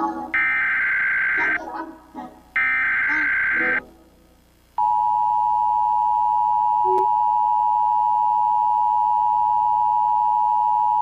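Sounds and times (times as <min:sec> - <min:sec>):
steady alarm tone: 0:00.4 - 0:01.6, 0:02.6 - 0:03.8.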